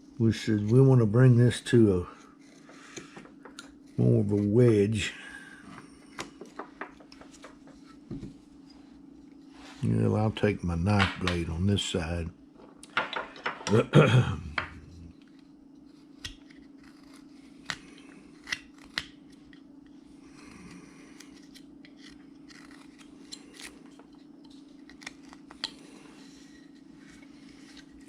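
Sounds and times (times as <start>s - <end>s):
steady low hum: 0.0s - 28.0s
knife paring wood: 14.6s - 19.6s, 20.4s - 28.0s.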